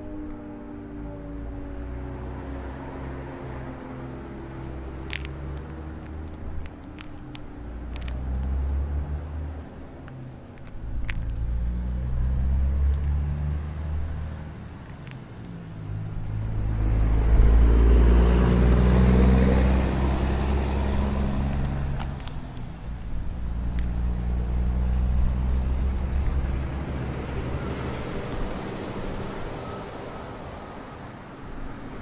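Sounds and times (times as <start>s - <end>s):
low engine rumble: 0.0s - 32.0s
car driving past: 15.6s - 22.3s, 23.5s - 32.0s.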